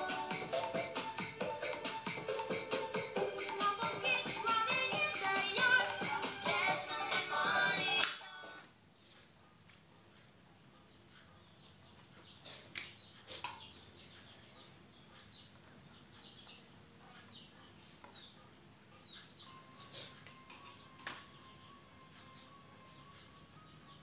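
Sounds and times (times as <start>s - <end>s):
faint bird chirps: 10.7s - 24.0s.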